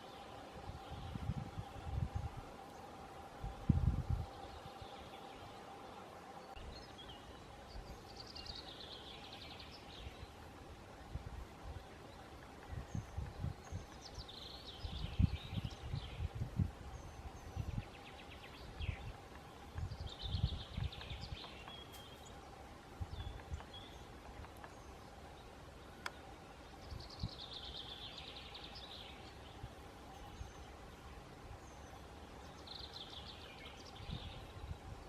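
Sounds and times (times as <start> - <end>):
songbirds singing trilled phrases: 6.4 - 10.6, 11.5 - 35.0.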